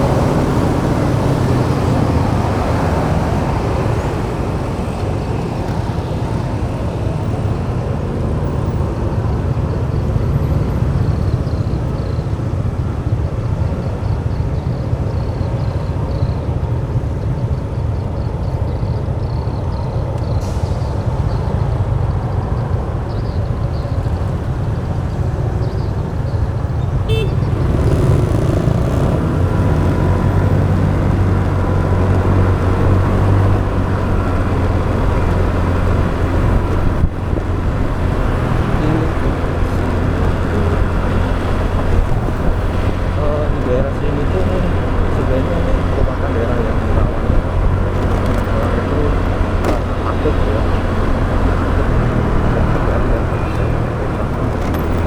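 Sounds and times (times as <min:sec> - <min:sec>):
motorbike engine: 0:00.0 - 0:07.4, 0:26.6 - 0:55.0
deep engine hum: 0:00.0 - 0:19.5, 0:20.2 - 0:55.0.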